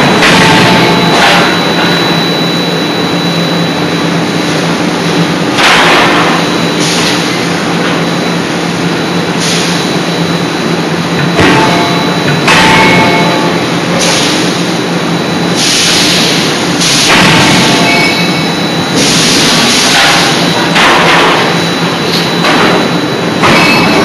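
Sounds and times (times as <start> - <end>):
hydraulic hum and whine: 0.0 - 24.0.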